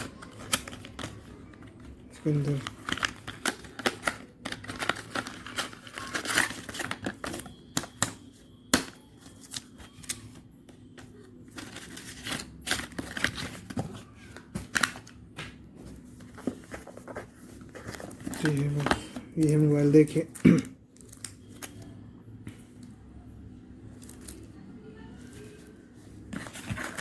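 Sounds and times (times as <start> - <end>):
paper packaging crinkling: 0.0 - 10.4, 11.0 - 15.2, 15.8 - 20.3, 25.2 - 27.0.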